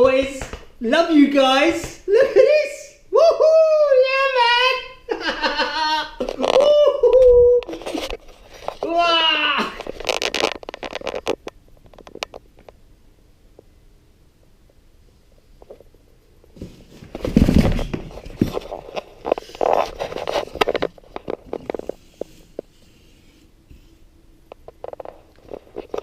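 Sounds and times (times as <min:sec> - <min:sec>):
packaging rustling: 0:09.8 - 0:12.4.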